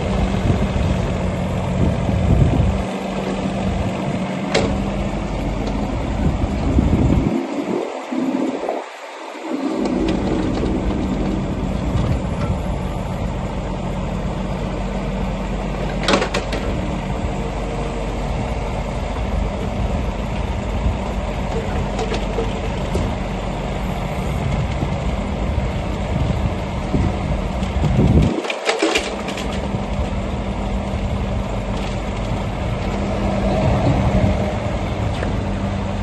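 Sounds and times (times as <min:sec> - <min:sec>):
excavator diesel engine running: 0:00.0 - 0:36.0.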